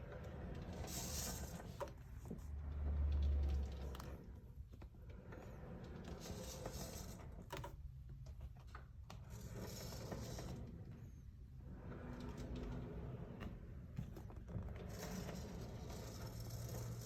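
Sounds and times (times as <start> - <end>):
chair swivel gritty scraping: 14.5 - 17.0.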